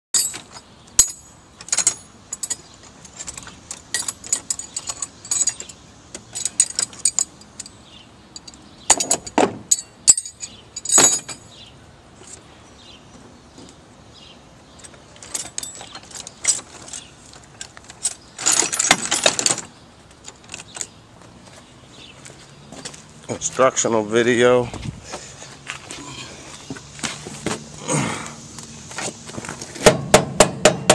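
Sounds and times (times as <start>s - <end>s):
metal tools clinking and jangling: 0.2s - 7.8s, 8.4s - 11.6s, 14.8s - 19.7s, 20.3s - 21.0s.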